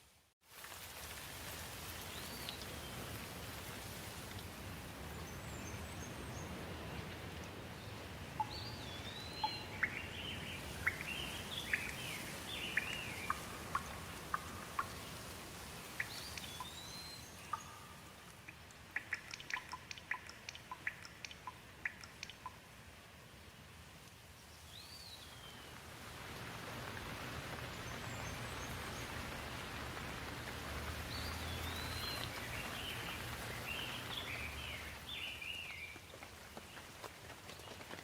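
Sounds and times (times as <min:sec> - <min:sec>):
steady rain: 0:00.0 - 0:38.0
sharp drips: 0:08.3 - 0:22.8, 0:26.3 - 0:36.9.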